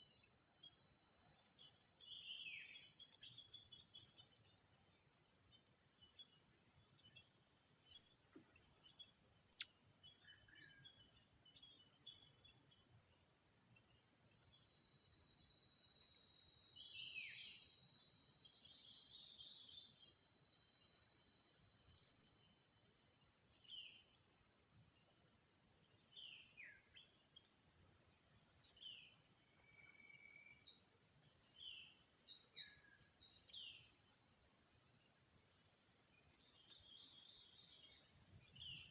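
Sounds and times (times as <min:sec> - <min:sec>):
birds chirping: 0:07.9 - 0:08.2
high-pitched insect drone: 0:08.0 - 0:08.2.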